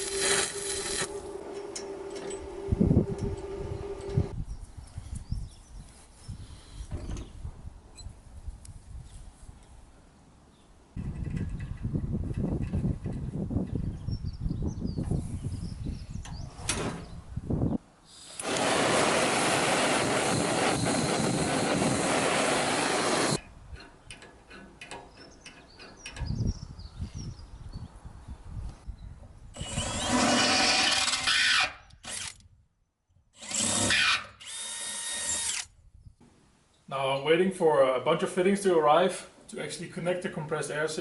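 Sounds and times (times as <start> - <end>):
power tool running: 0.0 - 4.3, 18.2 - 23.4, 29.6 - 31.4.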